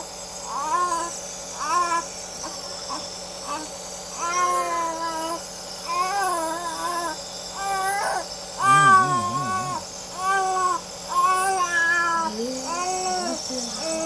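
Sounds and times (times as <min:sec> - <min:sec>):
baby crying: 0:04.2 - 0:14.0.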